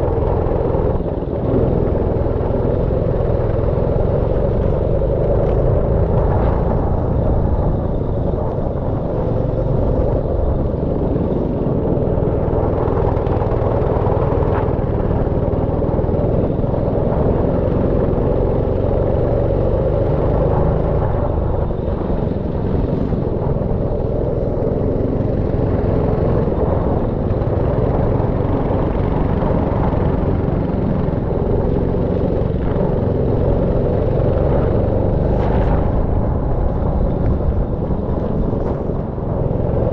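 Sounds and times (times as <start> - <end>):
go-kart engines running: 0.0 - 39.9.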